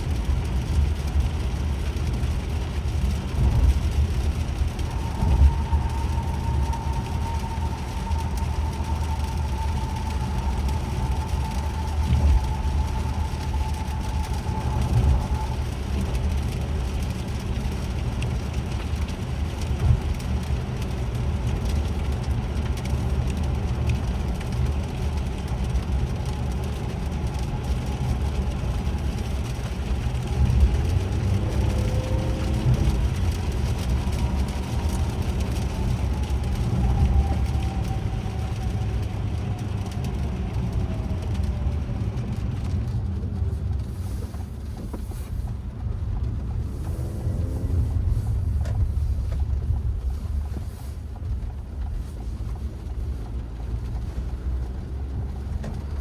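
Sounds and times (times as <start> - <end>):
faint whine: 0.0 - 20.2
road rumble with tyre hiss: 0.0 - 56.0.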